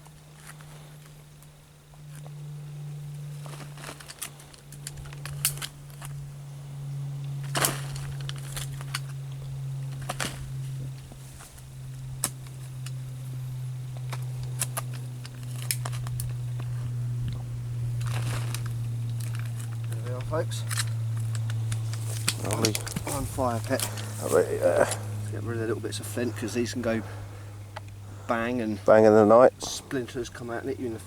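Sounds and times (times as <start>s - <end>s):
steady low hum: 0.0s - 31.0s
hand tool scraping soil: 17.9s - 25.3s.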